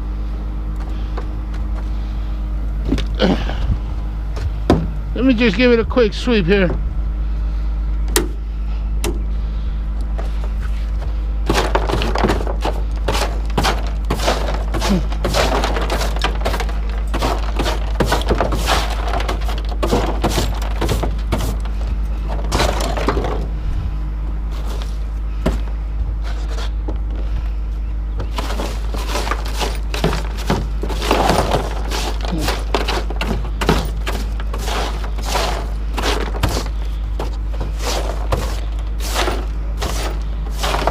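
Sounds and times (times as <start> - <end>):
steady low hum: 0.0 - 40.9
broom scraping: 10.2 - 23.8, 24.5 - 26.8, 28.2 - 40.9
small debris clattering: 11.5 - 23.5, 28.2 - 40.9.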